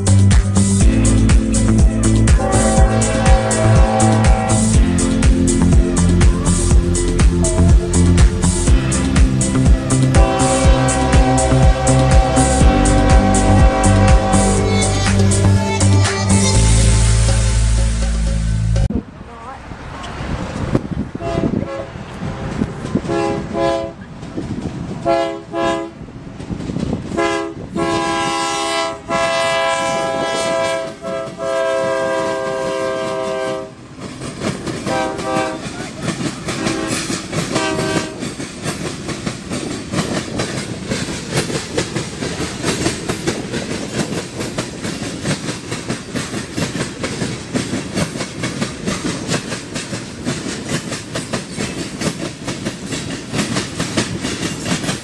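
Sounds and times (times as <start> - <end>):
train cars rumbling past: 0.0 - 55.0
locomotive air horn blasts: 2.3 - 6.7, 8.8 - 18.3, 21.2 - 22.0, 23.0 - 24.0, 25.0 - 26.0, 27.2 - 33.8, 34.8 - 35.8, 36.5 - 38.3
wheel clatter over rail joints: 33.9 - 55.0.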